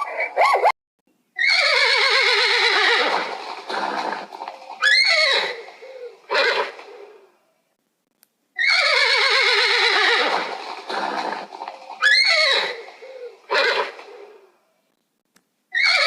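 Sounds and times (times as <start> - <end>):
horse whinnying: 1.4 - 7.2, 8.6 - 14.4, 15.7 - 16.0.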